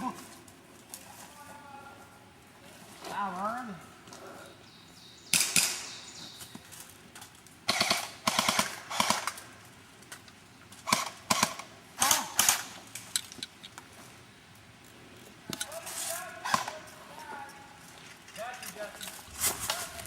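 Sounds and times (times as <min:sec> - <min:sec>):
airsoft guns firing bursts: 0:07.7 - 0:09.4, 0:10.9 - 0:12.8.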